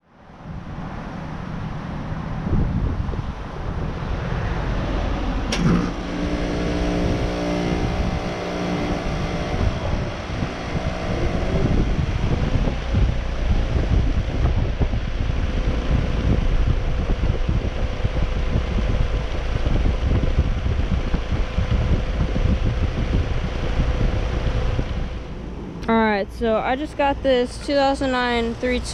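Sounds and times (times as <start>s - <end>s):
fan air rushing: 0.2s - 28.9s
heat pump humming: 1.2s - 28.9s
heat pump click: 5.5s - 7.7s.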